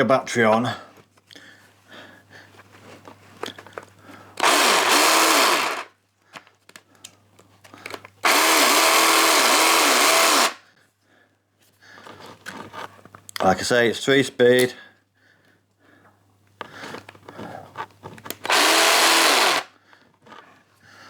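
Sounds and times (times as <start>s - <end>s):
cordless jigsaw whirring: 4.4s - 5.9s, 8.2s - 10.6s, 18.4s - 19.8s.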